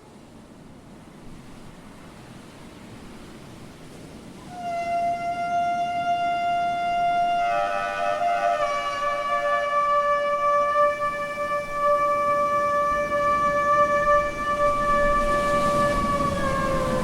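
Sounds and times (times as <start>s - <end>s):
shofar blast: 4.5s - 17.0s.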